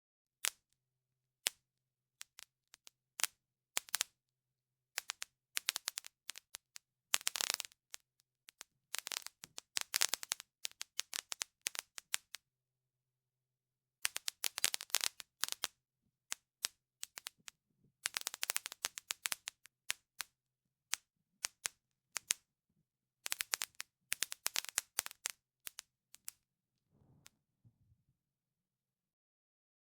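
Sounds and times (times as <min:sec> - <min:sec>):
sharp cracks and crackling: 0:14.0 - 0:20.3, 0:20.9 - 0:22.4, 0:23.2 - 0:26.4.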